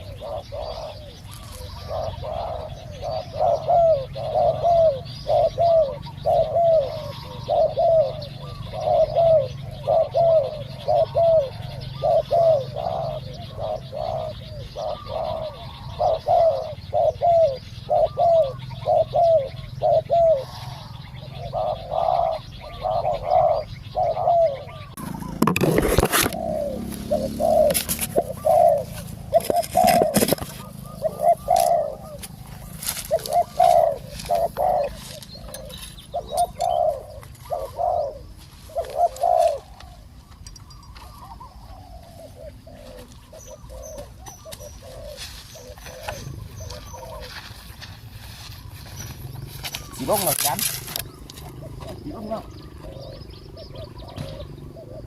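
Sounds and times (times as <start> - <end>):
doves cooing: 0.0 - 55.0.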